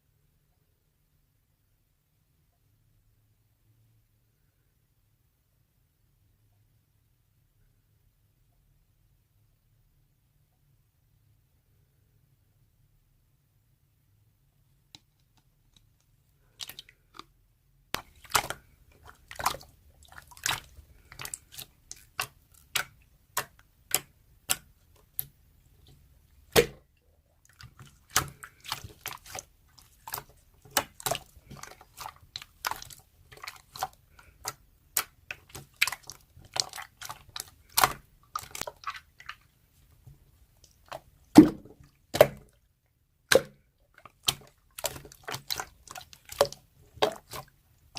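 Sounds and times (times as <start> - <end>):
slime squished by hand: 17.9 - 42.6, 43.3 - 47.9.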